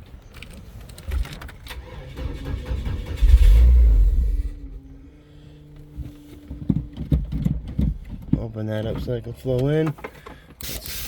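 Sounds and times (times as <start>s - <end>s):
truck engine cranking: 0.4s - 9.1s.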